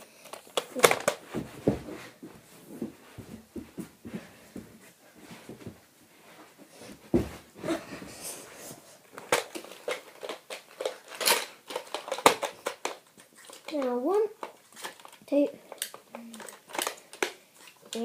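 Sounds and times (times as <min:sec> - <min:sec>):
plastic toy blaster clacks: 0:09.3 - 0:18.0.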